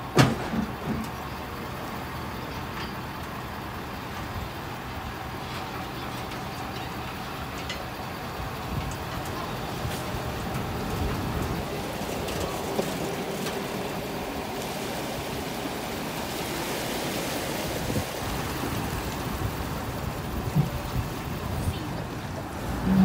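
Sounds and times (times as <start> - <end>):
steady rushing noise: 8.4 - 23.0.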